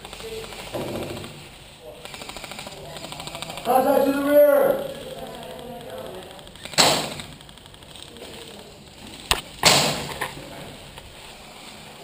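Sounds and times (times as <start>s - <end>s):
airsoft gun shot: 0.6s - 1.5s, 6.6s - 7.4s, 9.3s - 10.2s.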